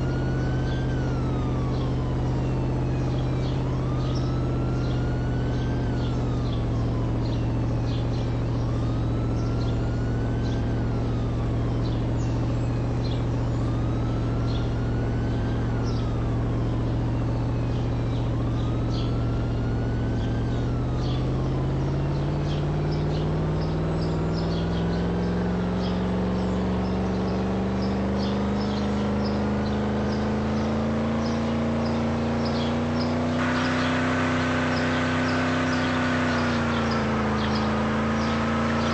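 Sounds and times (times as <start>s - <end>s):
car engine running: 0.0s - 38.9s
high calls and chirps: 31.2s - 38.9s.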